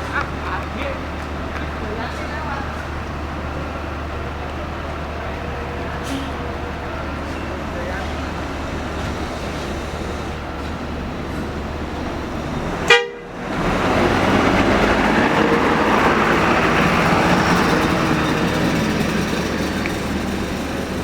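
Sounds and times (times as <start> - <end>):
large vehicle engine running: 0.0 - 21.0
bus horn blast: 12.8 - 13.4.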